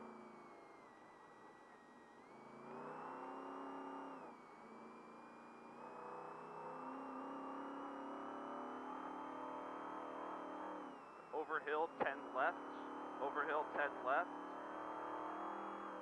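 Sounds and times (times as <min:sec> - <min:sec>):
thin whine: 0:00.0 - 0:16.0
truck engine revving: 0:05.7 - 0:16.0.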